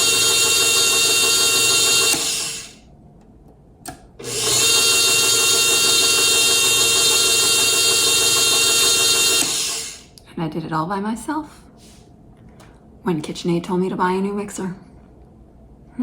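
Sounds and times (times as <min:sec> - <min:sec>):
stand mixer motor whine: 0:00.0 - 0:02.8, 0:04.2 - 0:10.1.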